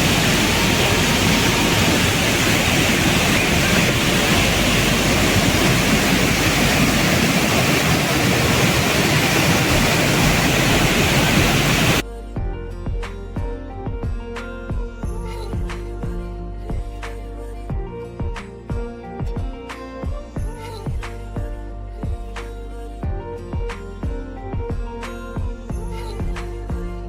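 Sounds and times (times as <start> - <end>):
waterfall pouring: 0.0 - 12.0
music: 0.0 - 27.0.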